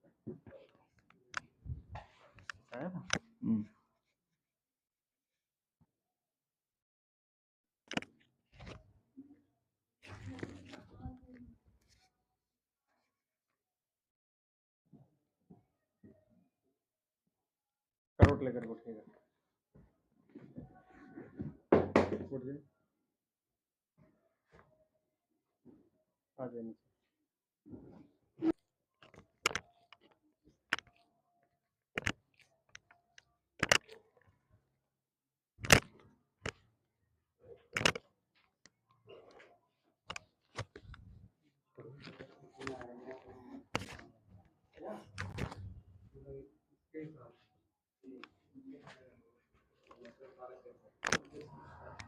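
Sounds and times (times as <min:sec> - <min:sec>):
sharp clicks: 0:29.0 - 0:30.0, 0:33.6 - 0:34.0, 0:35.6 - 0:36.6, 0:37.7 - 0:38.0.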